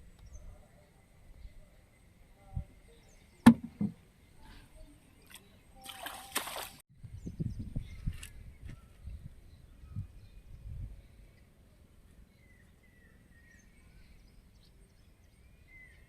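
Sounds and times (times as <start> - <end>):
sharp knock: 3.5 - 4.0
water sloshing and splashing: 5.2 - 6.8.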